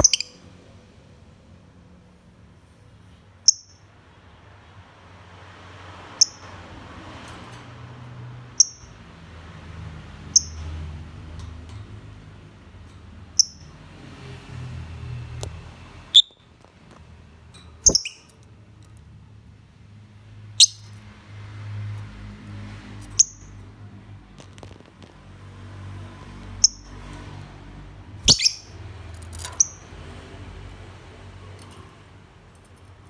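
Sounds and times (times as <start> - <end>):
lovebird chirping: 0.0 - 0.4, 3.5 - 3.8, 8.6 - 8.9, 16.1 - 16.4, 17.8 - 18.3, 20.6 - 20.9, 28.2 - 28.8, 29.6 - 29.8.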